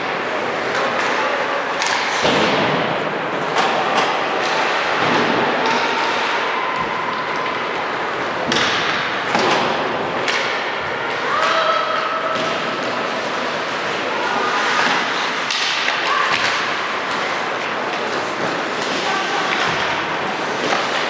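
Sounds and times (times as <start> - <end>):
ice rink noise: 0.0 - 21.0
hockey stick and puck knocks: 8.4 - 10.7.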